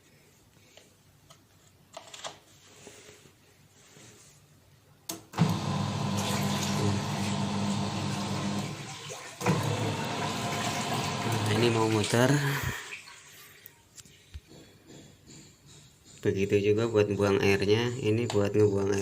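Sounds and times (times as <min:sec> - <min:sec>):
washing machine motor humming: 0:05.3 - 0:13.1
water churning: 0:08.0 - 0:13.5.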